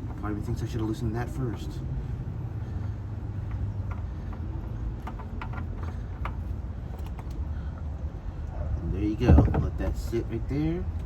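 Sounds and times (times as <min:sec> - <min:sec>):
low outdoor rumble: 0:00.0 - 0:11.0
faint clicks and knocks: 0:03.4 - 0:07.5.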